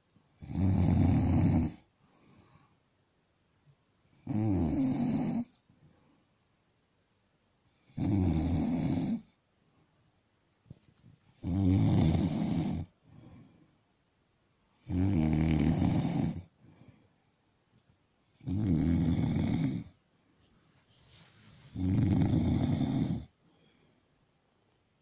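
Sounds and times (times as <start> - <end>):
loud snores: 0.4 - 1.9, 4.1 - 5.6, 7.8 - 9.4, 11.4 - 12.9, 14.8 - 16.5, 18.4 - 20.0, 21.7 - 23.3
faint breaths: 1.9 - 3.0, 5.6 - 6.5, 12.3 - 14.0, 16.0 - 17.4, 19.0 - 24.4.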